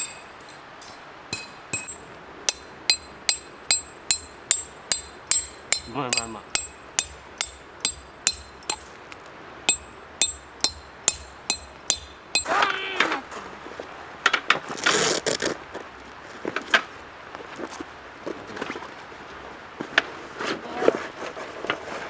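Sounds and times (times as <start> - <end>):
hammer striking metal: 0.0 - 8.9, 9.7 - 12.7
person speaking: 5.9 - 6.5, 12.4 - 13.3.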